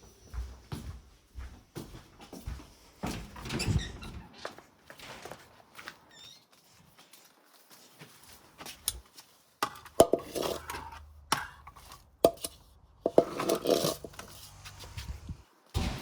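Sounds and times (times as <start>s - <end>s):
low steady hum: 10.8s - 15.9s.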